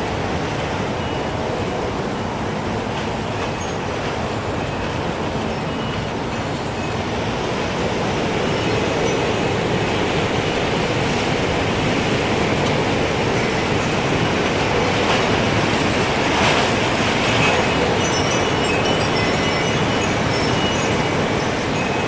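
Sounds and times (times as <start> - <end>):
strong gusting wind: 0.0 - 22.0
wind chime tinkles: 3.4 - 7.2, 8.0 - 9.8, 17.2 - 22.0.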